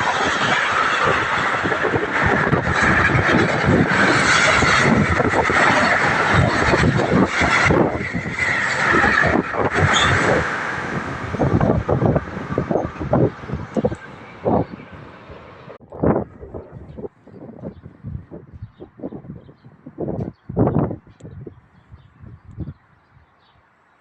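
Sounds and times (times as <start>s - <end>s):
train passing at speed: 0.0s - 18.4s.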